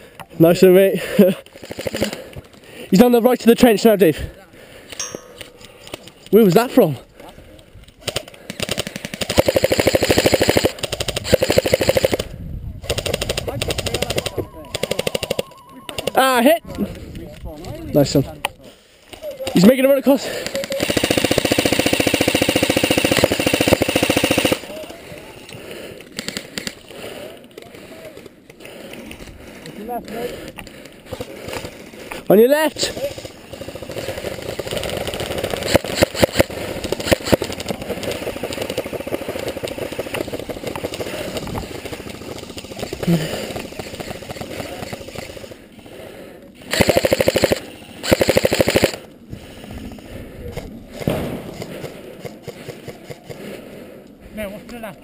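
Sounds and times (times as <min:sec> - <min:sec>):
airsoft gun full-auto burst: 0:01.6 - 0:02.2, 0:08.0 - 0:16.5, 0:19.5 - 0:24.9, 0:32.8 - 0:45.6, 0:46.7 - 0:49.1.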